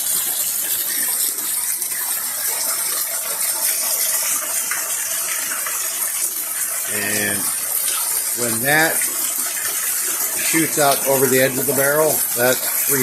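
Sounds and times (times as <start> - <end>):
water gushing and splashing: 0.0 - 13.0
heavy rain hissing: 10.4 - 13.0.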